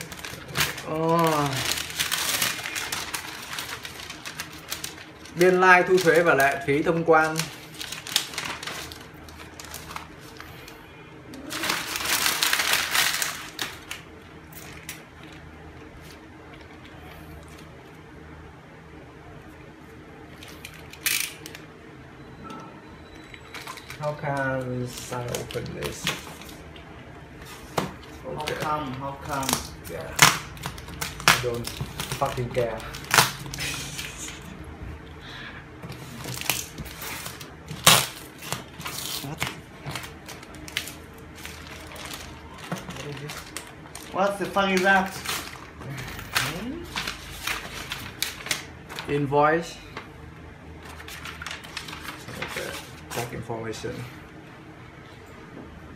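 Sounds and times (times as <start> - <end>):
package clicking and rustling: 0.0 - 10.1
packaging crinkling and rustling: 0.0 - 10.8, 11.4 - 17.7, 23.3 - 26.7, 27.4 - 34.4, 35.8 - 50.1, 50.8 - 53.8.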